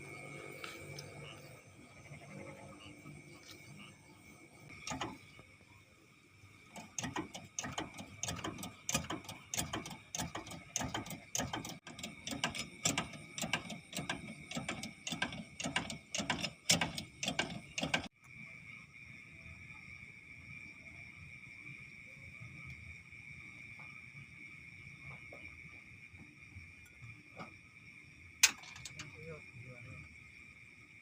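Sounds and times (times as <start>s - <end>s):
ratchet clicking: 4.8s - 5.2s, 6.7s - 18.1s.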